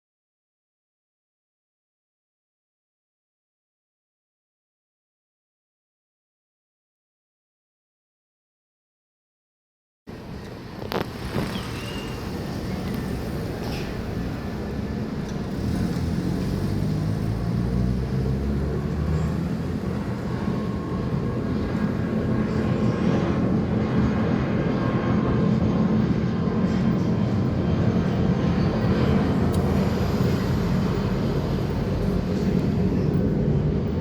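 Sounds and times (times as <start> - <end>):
jet engines running: 10.1 - 34.0.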